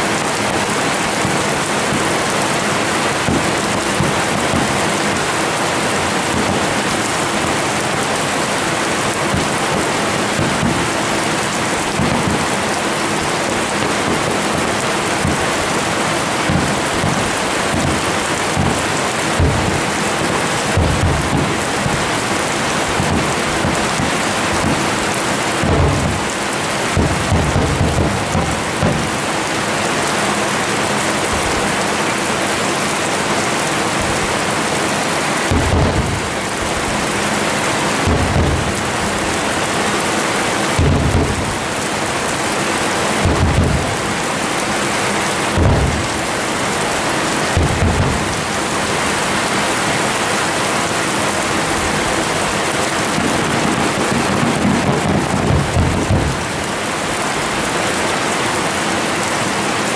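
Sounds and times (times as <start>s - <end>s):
fireworks crackling hiss: 0.3s - 50.8s, 52.2s - 57.1s
deep firework booms: 3.2s - 5.4s, 9.3s - 12.8s, 16.5s - 29.3s, 35.5s - 37.3s, 38.0s - 39.8s, 40.8s - 41.9s, 43.2s - 44.2s, 45.5s - 46.5s, 47.5s - 48.8s, 53.1s - 56.7s.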